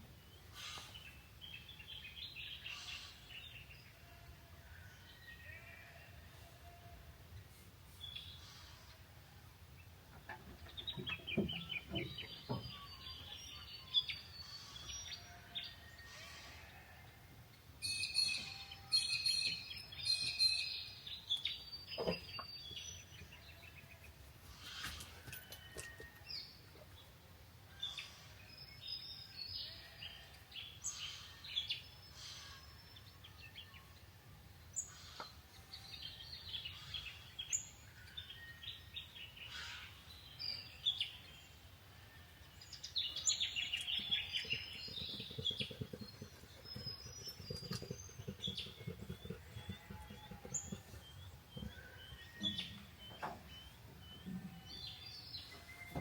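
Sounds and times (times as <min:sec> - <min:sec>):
small birds chirping: 0:42.6 - 0:56.0.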